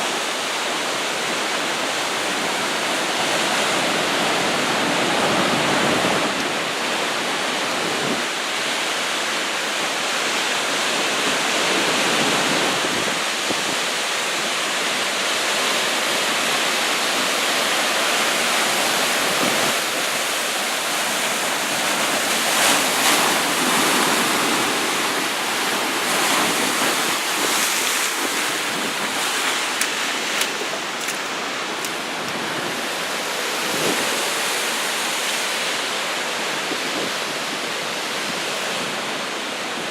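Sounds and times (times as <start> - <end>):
heavy surf pounding shore: 0.0 - 39.9
wind on microphone: 2.2 - 8.4, 21.6 - 34.6, 35.5 - 39.9.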